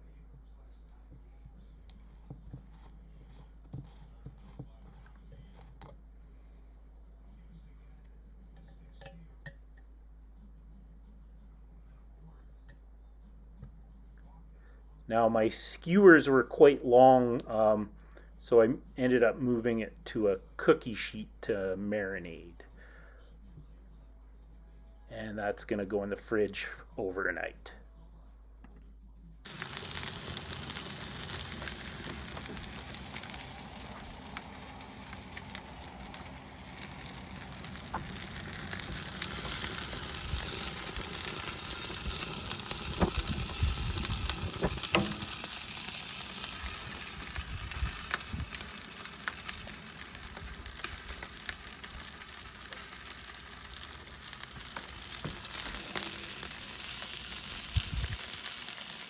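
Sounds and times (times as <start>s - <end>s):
chicken skewers sizzling: 29.5s - 59.0s.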